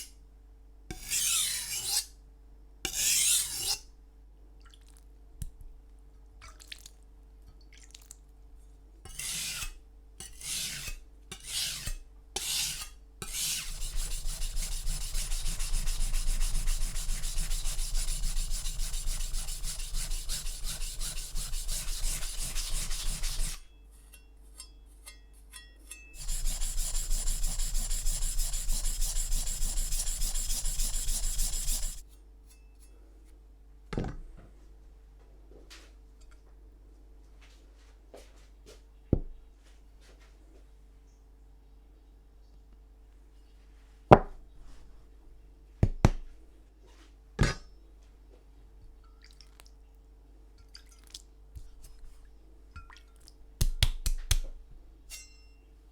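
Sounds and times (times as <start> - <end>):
knife scraping on sharpening stone: 0.9 - 2.1, 2.9 - 3.8, 9.1 - 23.6, 24.2 - 32.7, 55.1 - 55.6.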